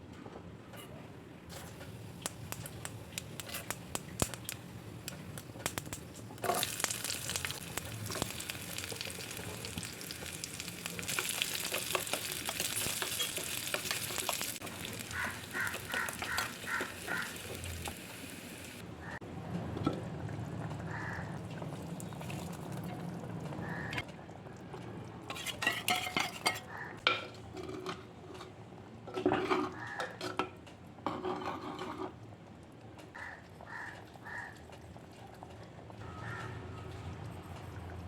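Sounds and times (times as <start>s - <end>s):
food frying in hot oil: 1.5s - 18.8s
stirring scrapes in pan: 25.3s - 26.6s.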